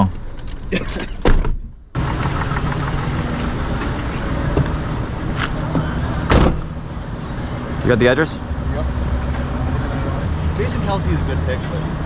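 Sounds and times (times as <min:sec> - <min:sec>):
vehicle engine idling: 0:02.0 - 0:08.4.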